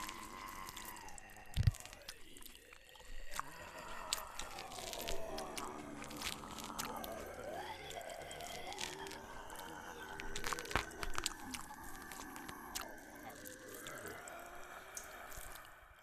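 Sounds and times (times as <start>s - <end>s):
sharp crunch: 0.0s - 13.0s
wet biting and chewing: 0.0s - 15.7s
voices moaning and groaning: 0.0s - 16.0s.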